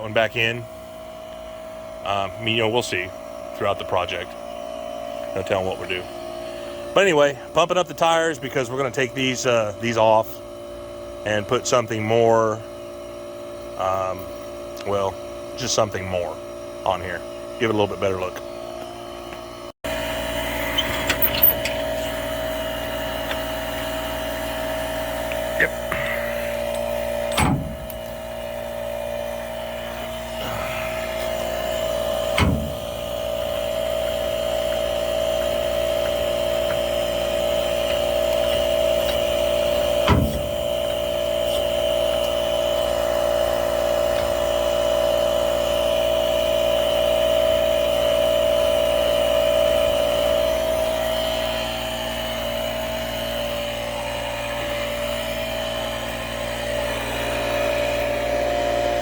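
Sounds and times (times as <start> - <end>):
air compressor humming: 0.0 - 59.0
sharp knocks: 40.0 - 40.8.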